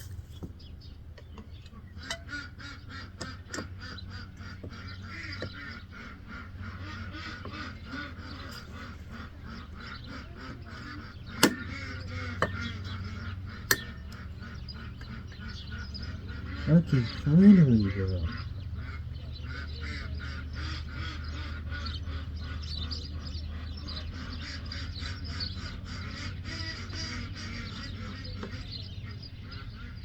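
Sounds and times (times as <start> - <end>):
hand tool repeated strokes: 11.4 - 11.7
sharp knocks: 11.4 - 11.8.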